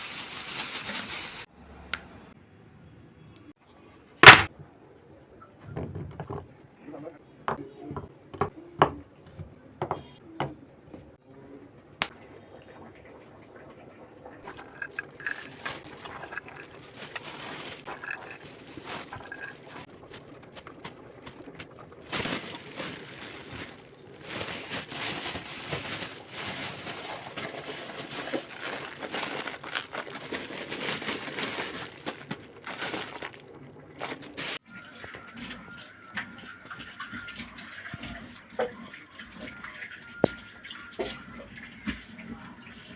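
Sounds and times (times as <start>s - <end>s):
rustling and crinkling: 0.0s - 1.5s, 14.5s - 34.6s.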